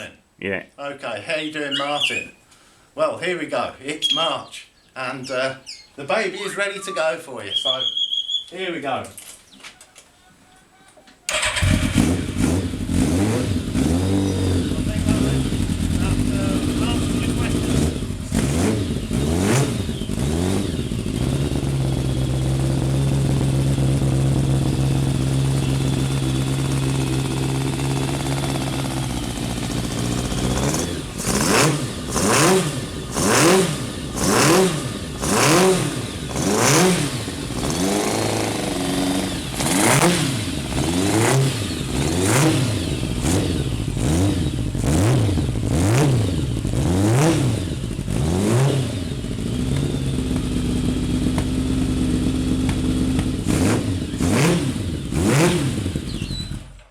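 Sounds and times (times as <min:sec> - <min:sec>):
motorcycle engine idling: 0:11.3 - 0:46.8, 0:47.6 - 0:48.2, 0:48.8 - 0:55.2, 0:55.8 - 0:56.9
engine revving: 0:11.3 - 0:56.7.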